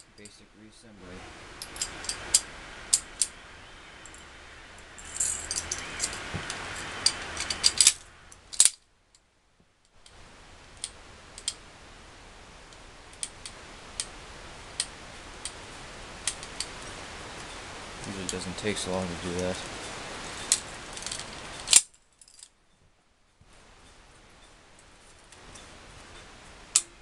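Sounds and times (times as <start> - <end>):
pistol parts clicking and clinking: 5.0 - 6.2, 7.0 - 8.8, 20.5 - 22.6.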